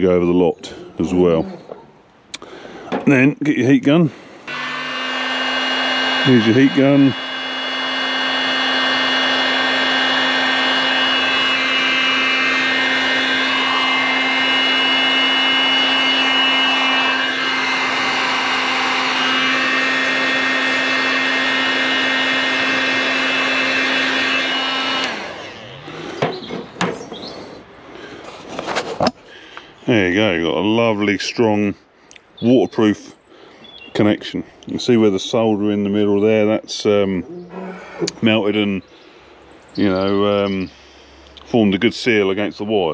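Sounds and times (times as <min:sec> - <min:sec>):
heat gun fan humming: 0:04.1 - 0:28.3.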